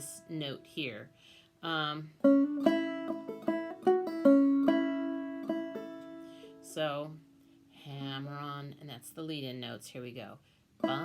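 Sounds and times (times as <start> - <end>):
banjo playing fiddle tune: 1.8 - 6.6, 10.8 - 11.0.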